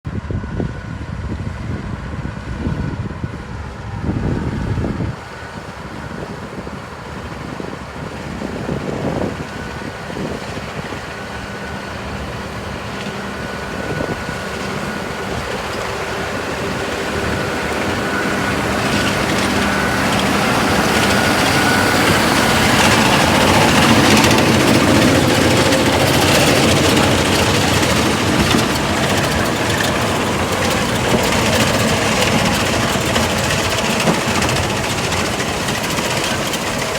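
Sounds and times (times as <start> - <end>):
tractor engine running: 3.7 - 36.9
topper machine rushing noise: 8.6 - 36.9.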